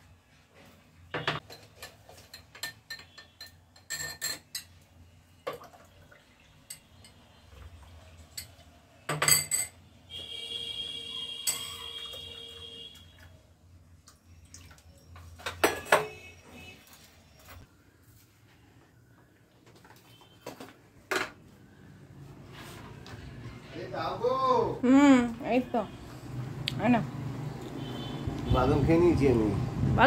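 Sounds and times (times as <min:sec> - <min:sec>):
crockery and cutlery clinking: 0:01.2 - 0:04.8, 0:08.3 - 0:09.8, 0:11.4 - 0:12.1.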